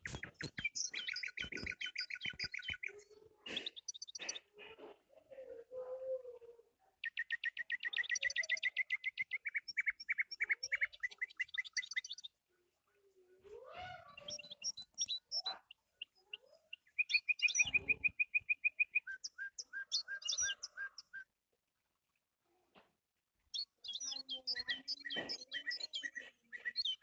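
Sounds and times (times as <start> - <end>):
bird chirping: 0.0 - 4.8, 5.8 - 12.4, 13.6 - 21.3, 23.4 - 27.0.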